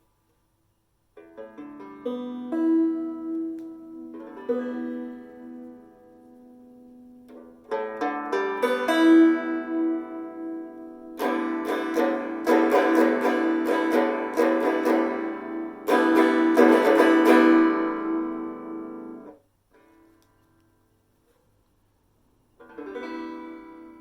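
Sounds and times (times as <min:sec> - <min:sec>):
banjo plucked and strummed: 0:01.2 - 0:20.2, 0:22.6 - 0:24.0.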